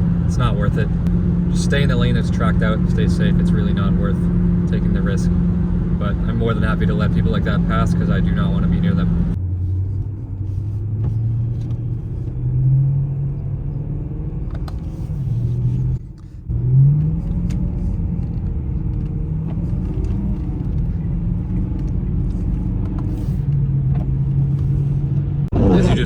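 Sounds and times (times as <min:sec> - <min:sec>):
car engine rumble: 0:00.0 - 0:26.0
tyres on snowy road: 0:00.0 - 0:26.0.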